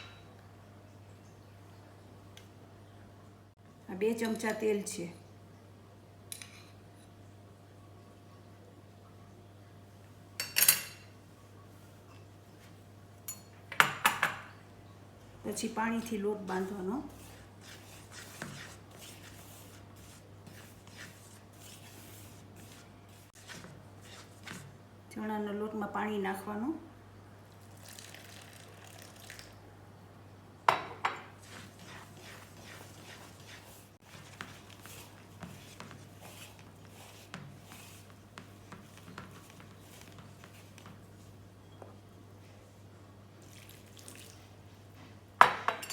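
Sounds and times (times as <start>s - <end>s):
faint steady hum: 0.0s - 45.7s
batter stirred in bowl: 15.7s - 24.8s, 31.0s - 41.7s.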